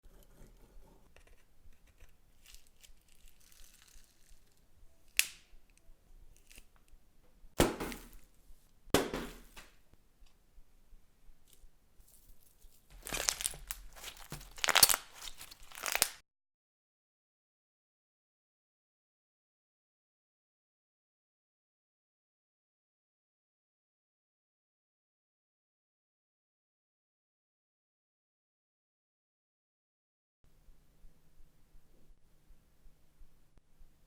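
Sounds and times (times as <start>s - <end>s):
slime crackling and popping: 2.4s - 5.4s, 12.9s - 16.2s
sharp crackling snaps: 2.4s - 7.0s, 12.9s - 16.2s.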